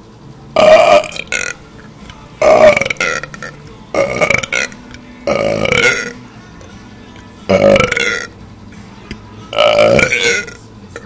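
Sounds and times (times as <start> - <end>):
man burping loudly: 0.6 - 1.6, 2.4 - 6.2, 7.5 - 8.4, 9.5 - 10.6.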